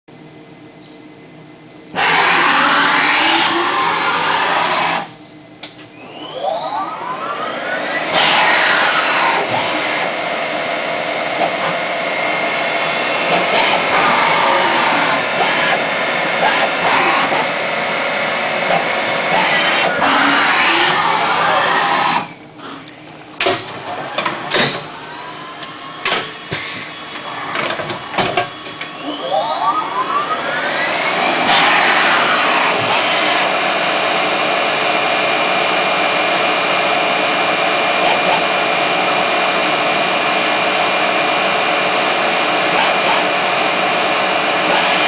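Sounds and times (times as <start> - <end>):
machine high whine: 0.1 - 45.0
loud rushing and whirring: 29.2 - 37.8.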